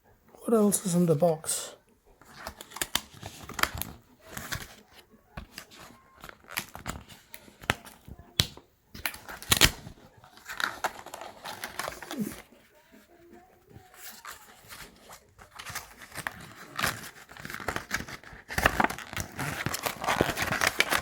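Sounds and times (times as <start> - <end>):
cardboard and paper rustling: 2.2 - 21.0.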